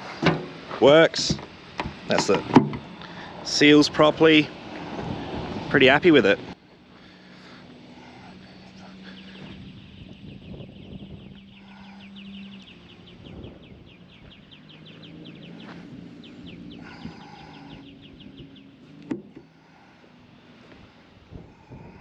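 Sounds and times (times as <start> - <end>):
bird trilling: 8.0 - 18.8.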